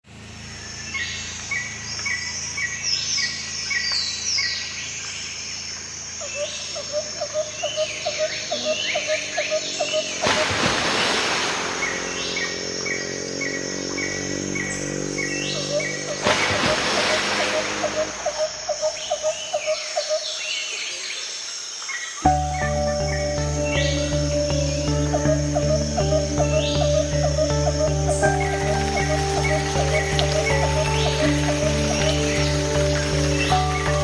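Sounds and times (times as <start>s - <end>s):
low repeated bird call: 0.5s - 21.4s, 22.1s - 34.0s
birds chirping and calling: 0.6s - 10.7s, 11.7s - 34.0s
rush of falling water: 9.3s - 13.4s, 15.6s - 19.1s, 28.2s - 34.0s.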